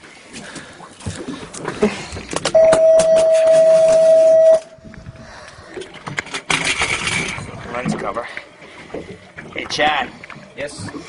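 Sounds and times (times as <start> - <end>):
steady electronic beep: 2.6 - 4.8.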